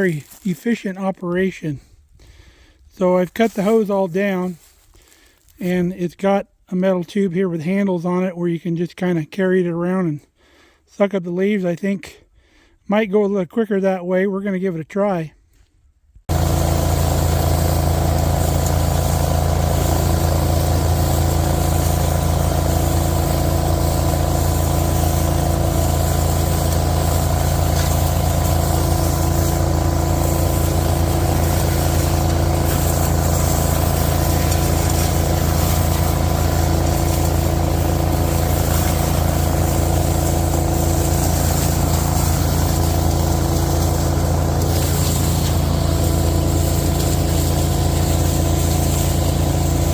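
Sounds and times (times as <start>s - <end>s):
leaf vacuum machine droning: 0.0s - 5.8s, 16.3s - 49.9s.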